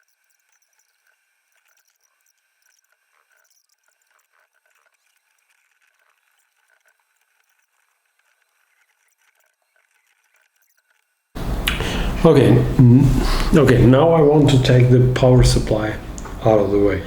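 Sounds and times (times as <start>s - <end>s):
small ticks and handling noises: 0.0s - 11.2s.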